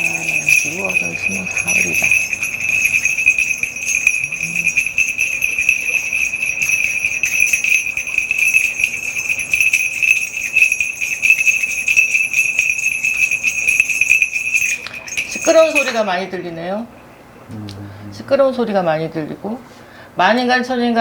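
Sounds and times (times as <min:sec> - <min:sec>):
bell rattle jingling: 0:00.0 - 0:16.3.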